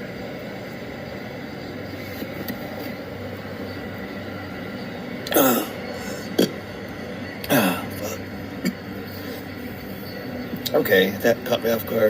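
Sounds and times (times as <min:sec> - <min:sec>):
man hiccuping: 0:05.3 - 0:06.6.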